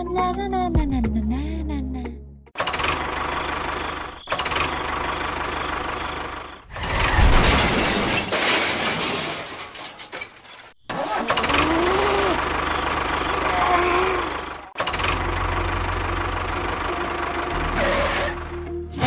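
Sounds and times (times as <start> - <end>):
small tractor engine running: 2.6 - 6.7, 11.0 - 18.8.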